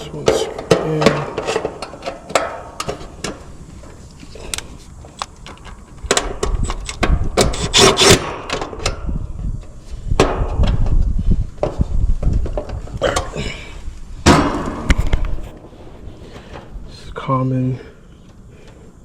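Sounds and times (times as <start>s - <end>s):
heavy handling noise: 0.0s - 17.3s
sharp metal clicks: 4.5s - 9.0s.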